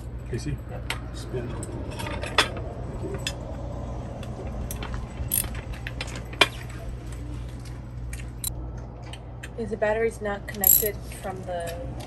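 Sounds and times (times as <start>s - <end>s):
metallic clinks of tools and bolts: 10.6s - 10.9s.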